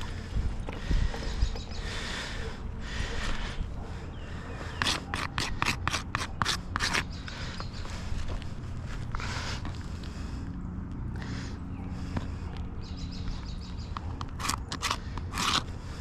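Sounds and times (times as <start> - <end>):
outdoor background noise: 0.0 - 16.0
quick rubbing strokes: 14.2 - 15.7.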